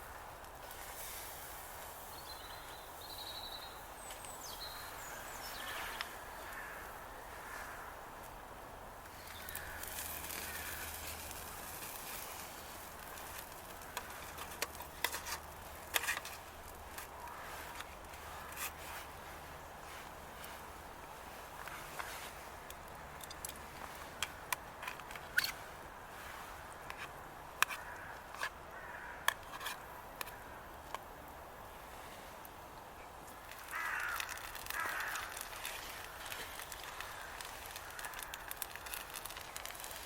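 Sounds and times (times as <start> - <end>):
bird chirping: 2.1 - 6.2.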